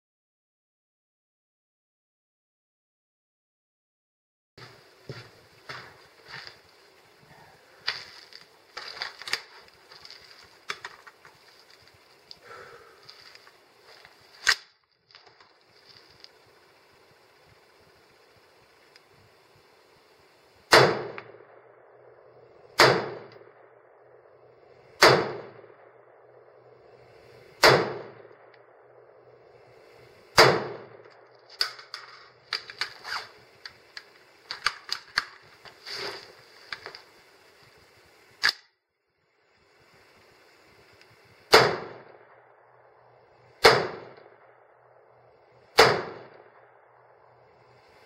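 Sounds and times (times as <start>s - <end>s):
rifle shots with echo: 20.7s - 29.7s, 30.4s - 31.8s, 41.5s - 45.1s, 45.8s - 47.3s
magazine change clicks and clatter: 31.1s - 35.5s, 38.4s - 38.7s.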